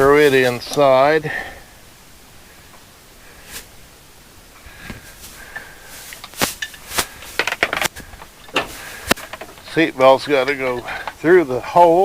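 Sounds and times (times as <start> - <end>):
clicks and knocks of parts fitted: 6.2 - 11.2.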